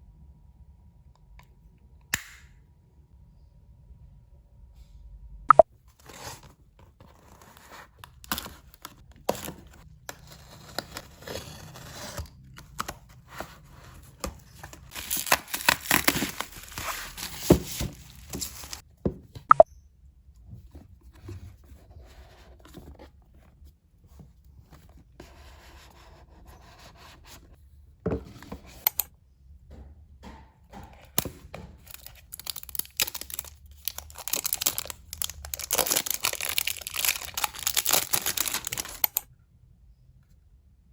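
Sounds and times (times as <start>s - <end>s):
packaging tearing and crinkling: 14.5s - 18.8s, 31.8s - 39.2s
packaging taps and clicks: 30.9s - 39.2s.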